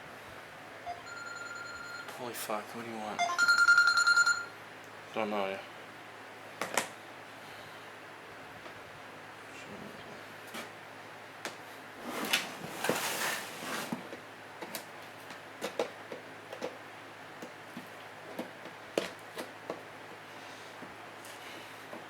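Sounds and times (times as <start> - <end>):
rustling scrape on metal tin: 12.1 - 13.9.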